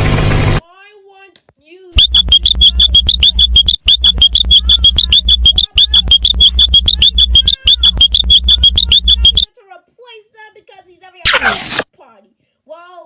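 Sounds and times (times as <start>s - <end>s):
rapid high-pitched electronic beeps: 2.0s - 9.5s, 11.3s - 11.8s.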